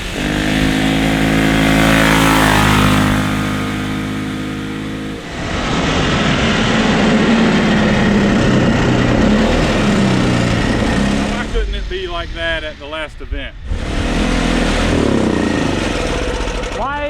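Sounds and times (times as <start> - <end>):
atv engine running loud: 0.0 - 17.0.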